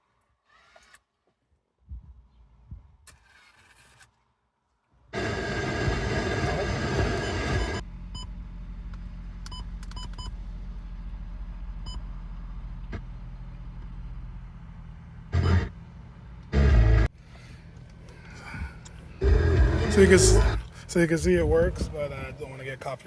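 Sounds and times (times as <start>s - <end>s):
car engine starting and idling: 5.1s - 23.0s.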